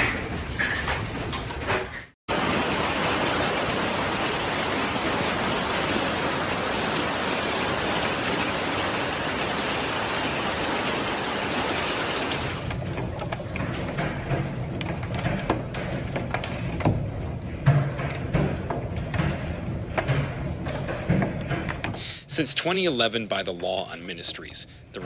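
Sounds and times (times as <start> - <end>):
hail and rain pelting down: 2.3 - 16.7.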